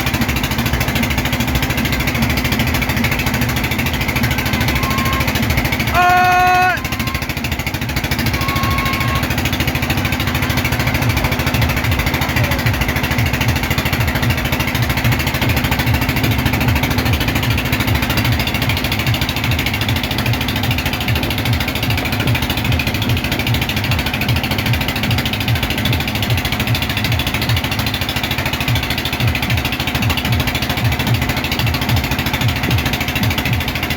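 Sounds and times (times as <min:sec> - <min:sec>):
boat engine thumping: 0:00.0 - 0:33.9
loud horn tone: 0:04.3 - 0:12.9.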